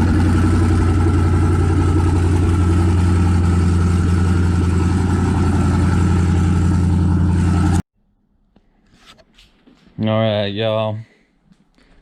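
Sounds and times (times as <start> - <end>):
single-cylinder engine running: 0.0 - 7.8.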